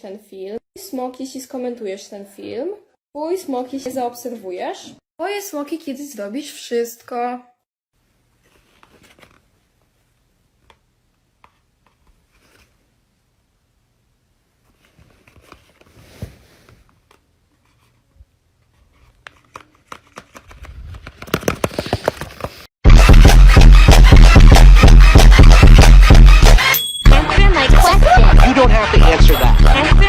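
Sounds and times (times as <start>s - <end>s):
paper rustling and crinkling: 8.4s - 9.6s, 14.6s - 18.0s, 18.6s - 22.7s.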